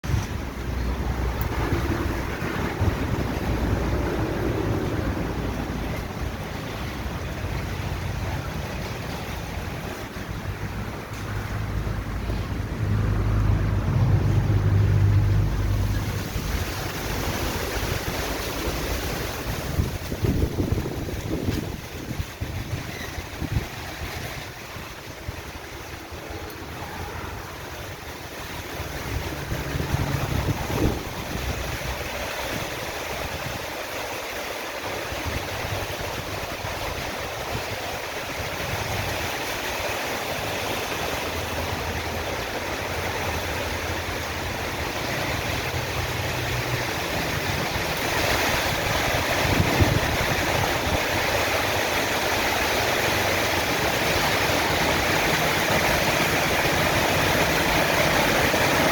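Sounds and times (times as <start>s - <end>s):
wind rushing: 0.0s - 33.7s
rushing water: 0.0s - 58.9s
low rumble: 0.1s - 21.8s, 28.7s - 32.3s.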